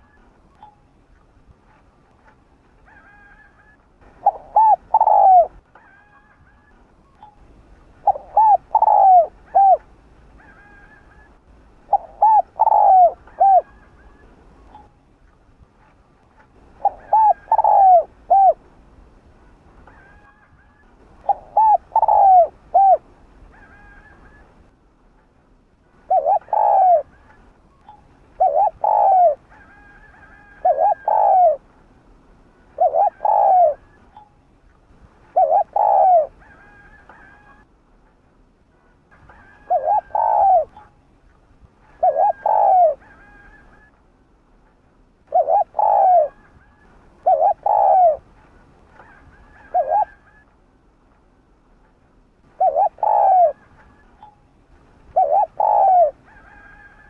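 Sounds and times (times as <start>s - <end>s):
dove cooing: 2.8s - 7.2s, 8.0s - 14.9s, 16.7s - 18.7s, 19.9s - 24.5s, 26.0s - 31.7s, 32.6s - 34.3s, 35.3s - 37.7s, 39.2s - 41.0s, 41.8s - 44.0s, 45.3s - 50.5s, 52.5s - 54.4s, 55.1s - 57.0s.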